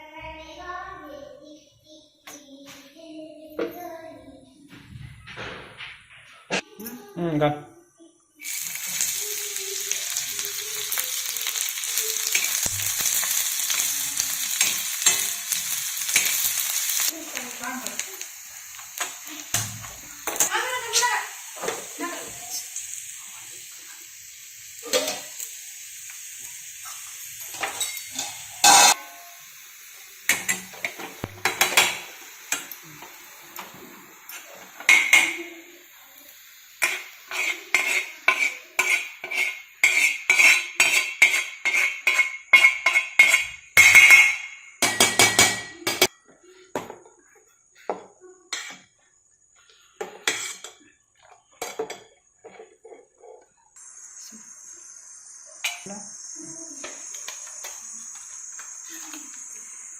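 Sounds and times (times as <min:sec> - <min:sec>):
steady hiss: 0:08.4 - 0:46.1, 0:53.6 - 0:59.9
metal spoon clinking on a pot: 0:27.3 - 0:29.2, 0:36.8 - 0:46.1.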